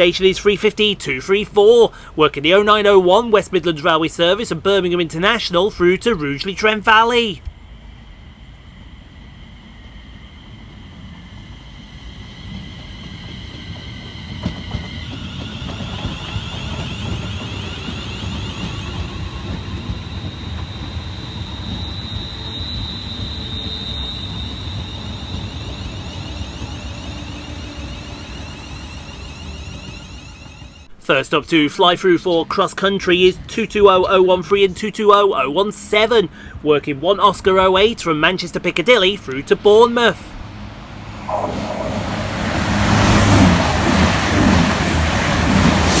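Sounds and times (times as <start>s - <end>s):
train running rumble: 0.0s - 46.0s
high electric whine: 15.6s - 31.0s, 38.6s - 46.0s.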